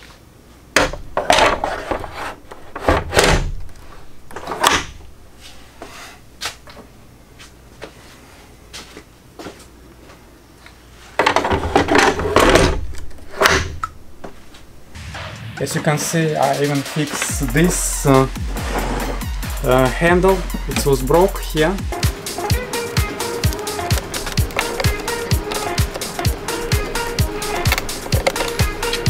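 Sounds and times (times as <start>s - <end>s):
plastic parts clunking: 0.8s - 5.0s, 11.2s - 14.0s, 23.5s - 26.4s, 27.2s - 28.7s
plastic parts rattling: 27.6s - 28.6s.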